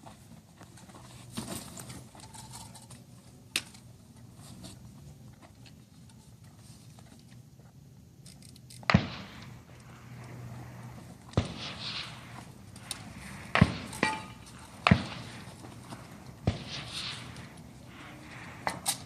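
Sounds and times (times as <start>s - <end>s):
metallic clicks of gear handled: 8.2s - 8.9s
rifle shot: 8.8s - 10.2s, 11.3s - 15.7s, 16.4s - 18.8s.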